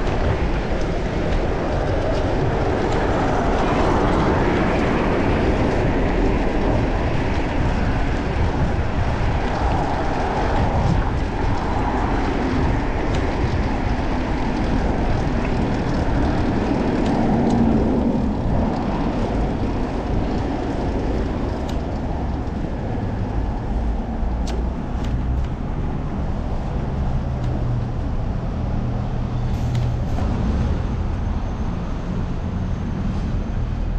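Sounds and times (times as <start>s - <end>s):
road traffic noise: 0.0s - 33.9s
wind rush on camera: 0.0s - 33.9s.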